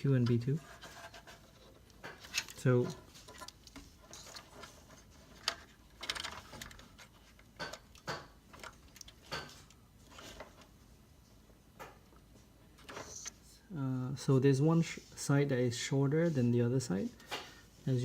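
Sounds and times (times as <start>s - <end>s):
faint rubbing: 0.3s - 5.8s.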